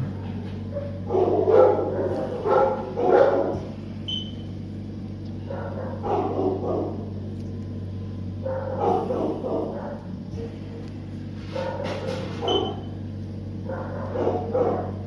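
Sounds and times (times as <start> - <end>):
steady low hum: 0.0 - 15.0
dog barking: 0.6 - 3.7, 5.4 - 7.2, 8.4 - 10.7, 11.4 - 12.9, 13.6 - 15.0.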